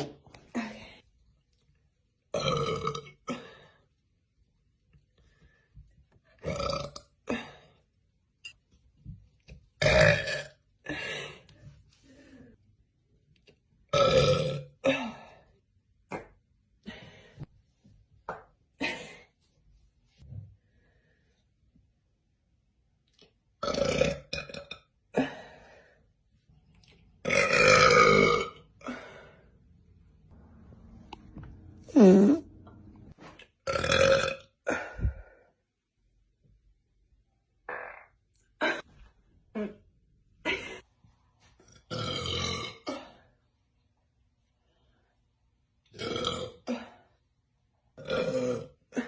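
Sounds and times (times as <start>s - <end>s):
woman burping loudly: 2.3s - 3.6s, 6.4s - 7.5s, 9.8s - 11.0s, 13.9s - 15.2s, 23.6s - 25.3s, 27.2s - 29.2s, 31.8s - 32.8s, 33.6s - 35.0s, 41.9s - 43.2s, 46.0s - 47.0s, 48.0s - 49.0s.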